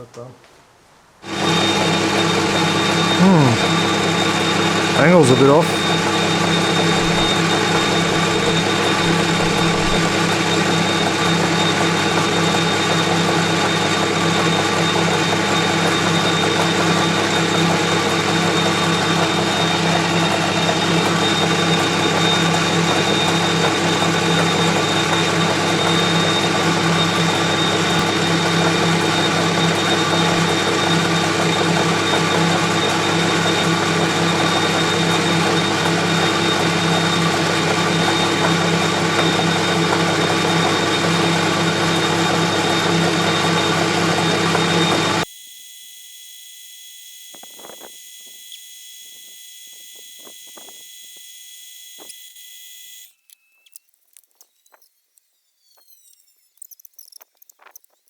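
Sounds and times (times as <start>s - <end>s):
thin high whine: 2.6s - 11.5s
metal lathe humming: 5.8s - 13.2s, 15.2s - 45.2s.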